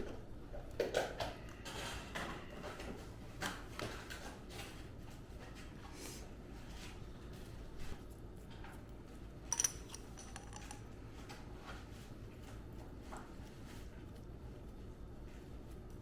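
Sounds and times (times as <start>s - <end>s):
ringing clink: 9.5s - 10.8s.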